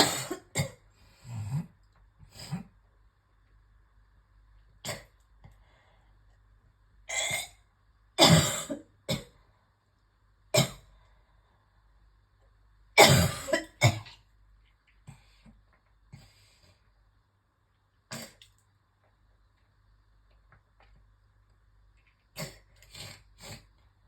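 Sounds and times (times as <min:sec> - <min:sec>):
person coughing: 0:00.0 - 0:00.8, 0:08.2 - 0:09.3, 0:13.0 - 0:14.2.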